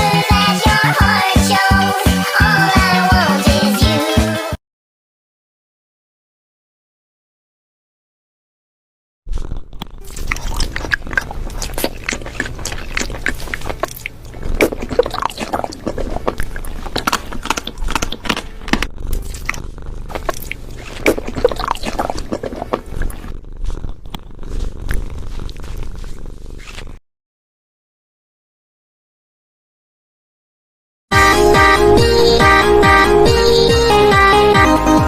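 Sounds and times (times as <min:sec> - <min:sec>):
cat crunching food: 0:09.3 - 0:27.0.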